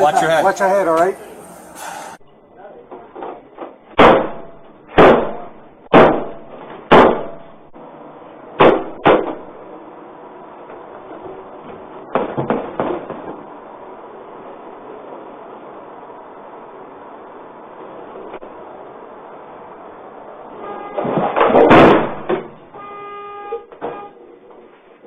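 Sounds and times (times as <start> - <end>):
van doors slamming shut: 20.8 - 22.7.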